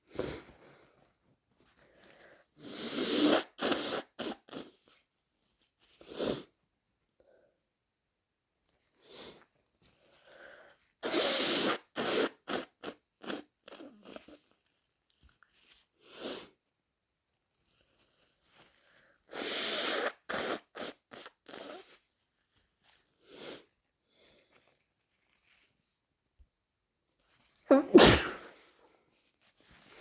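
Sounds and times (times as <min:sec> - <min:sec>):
person blowing nose: 0:02.6 - 0:05.0, 0:06.0 - 0:06.5, 0:11.0 - 0:14.5, 0:16.0 - 0:16.6, 0:18.9 - 0:22.0, 0:23.2 - 0:24.4, 0:27.7 - 0:28.7.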